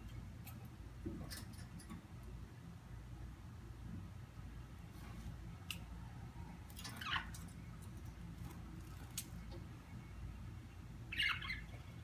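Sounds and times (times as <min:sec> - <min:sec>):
budgerigars chirping: 0:11.1 - 0:11.8.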